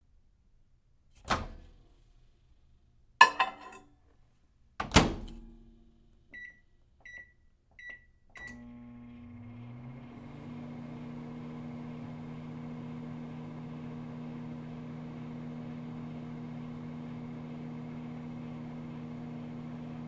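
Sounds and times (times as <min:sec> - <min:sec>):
keypad beeps: 0:06.4 - 0:08.6
microwave oven humming: 0:08.4 - 0:20.0.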